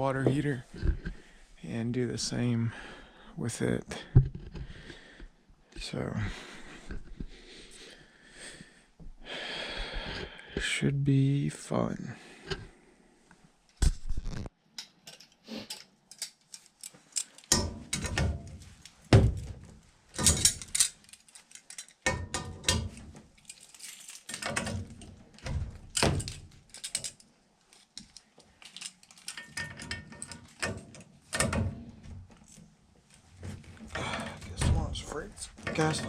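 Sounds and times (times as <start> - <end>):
metal tools clicking and clinking: 14.8 - 19.0, 20.1 - 31.7, 33.8 - 36.0
heavy thunks: 19.1 - 19.7, 33.4 - 36.0.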